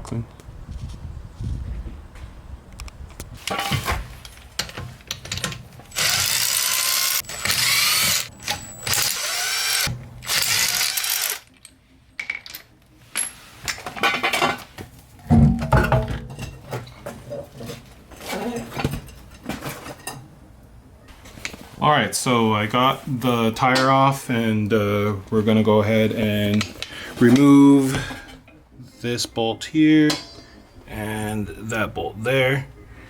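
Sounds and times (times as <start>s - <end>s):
knocks and handling noise: 2.2s - 6.2s, 11.5s - 20.3s
handheld power tool running: 5.9s - 11.4s.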